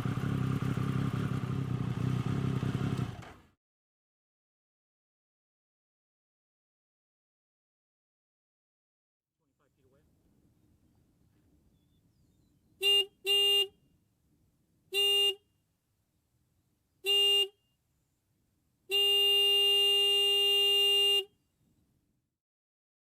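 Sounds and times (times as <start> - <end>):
motorcycle horn honking: 12.8 - 13.7, 14.9 - 15.4, 17.0 - 17.6, 18.9 - 21.3.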